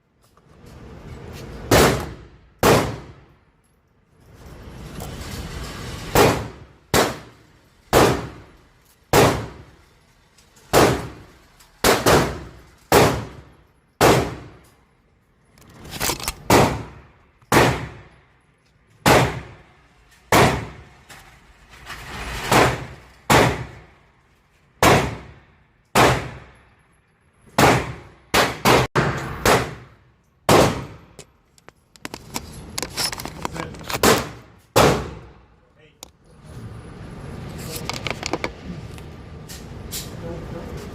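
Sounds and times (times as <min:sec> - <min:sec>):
shotgun shots: 0:01.7 - 0:03.2, 0:06.2 - 0:07.3, 0:11.8 - 0:13.4, 0:14.0 - 0:14.6, 0:24.8 - 0:25.4, 0:26.0 - 0:26.5, 0:27.6 - 0:31.0, 0:34.0 - 0:35.3.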